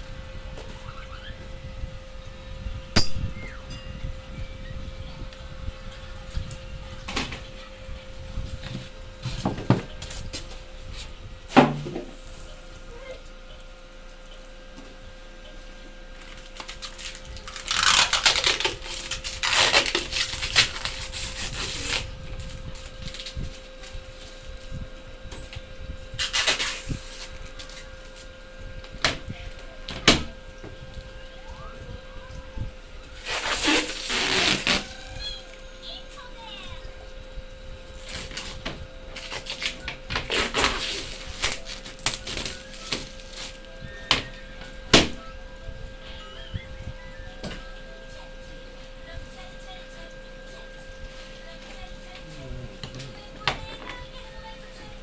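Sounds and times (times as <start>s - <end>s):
faint steady hum: 0.0s - 55.0s
scraping rustle: 16.2s - 24.8s, 33.1s - 35.5s.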